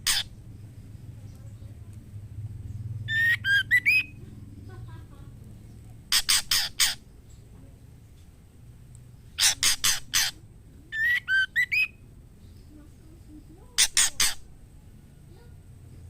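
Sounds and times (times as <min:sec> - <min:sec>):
bird harsh call notes: 0:00.0 - 0:00.4, 0:03.1 - 0:04.2, 0:06.1 - 0:07.1, 0:09.4 - 0:12.0, 0:13.8 - 0:14.5
bird whistled notes: 0:03.1 - 0:04.2, 0:11.0 - 0:12.0.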